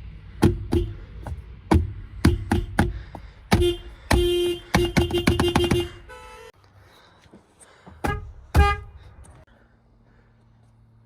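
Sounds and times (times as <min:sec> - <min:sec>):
car horn beeping: 0:00.6 - 0:01.0, 0:02.2 - 0:02.8, 0:03.5 - 0:06.6, 0:08.0 - 0:09.1.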